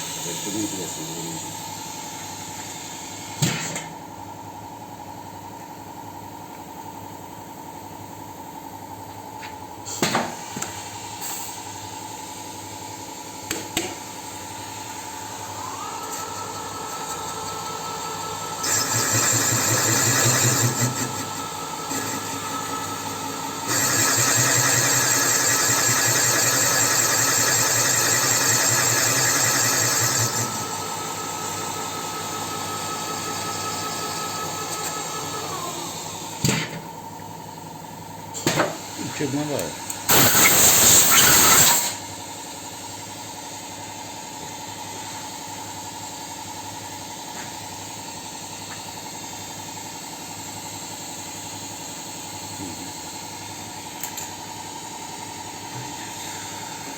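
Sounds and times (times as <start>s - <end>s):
loud metal cutting noise: 0.0s - 1.7s, 15.4s - 36.0s, 39.2s - 42.0s
machine hum: 14.6s - 36.2s.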